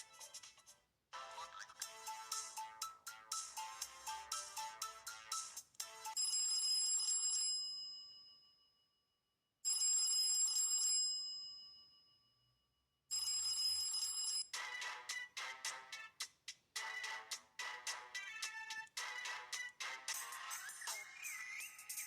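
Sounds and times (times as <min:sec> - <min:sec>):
phone ringtone melody: 0:01.8 - 0:07.4
telephone bell ring: 0:06.2 - 0:08.6, 0:09.7 - 0:12.2, 0:13.1 - 0:14.5.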